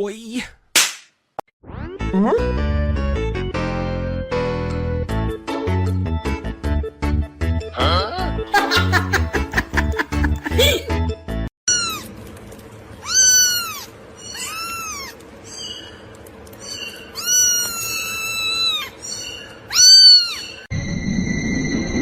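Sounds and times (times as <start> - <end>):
cat meowing: 11.7 - 12.1, 13.0 - 15.8, 16.7 - 20.6.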